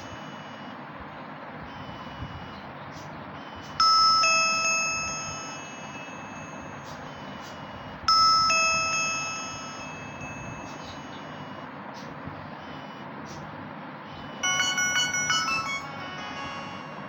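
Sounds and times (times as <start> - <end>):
mobile phone ringtone chime: 0.0 - 0.8, 3.4 - 11.7, 14.2 - 17.0.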